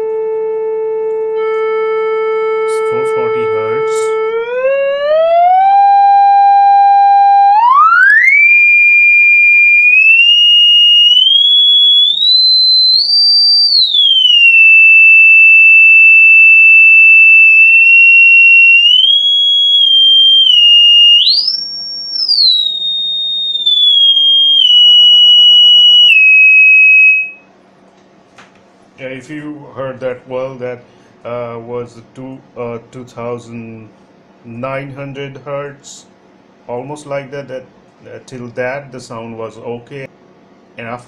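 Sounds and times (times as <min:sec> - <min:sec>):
test tone through speaker: 0:00.0 - 0:27.5.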